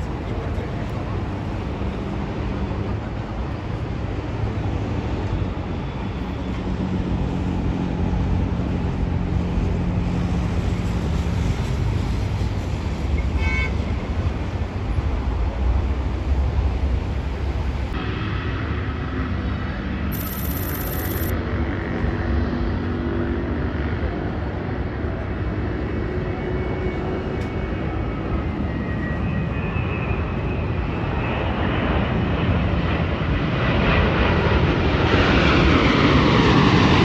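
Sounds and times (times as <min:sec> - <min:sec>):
jet engines roaring: 0:23.9 - 0:37.0.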